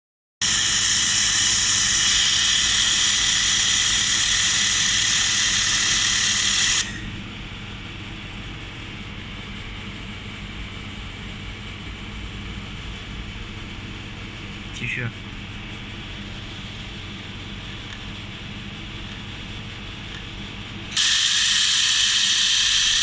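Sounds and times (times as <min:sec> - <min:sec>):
gas hissing from welder: 0:00.4 - 0:07.1, 0:20.9 - 0:23.0
machine hum: 0:00.4 - 0:23.0.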